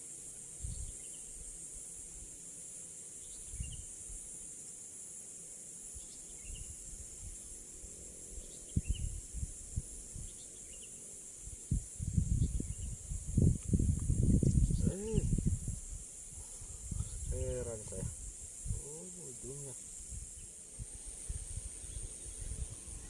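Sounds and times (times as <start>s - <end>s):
insects droning: 0.0s - 23.0s.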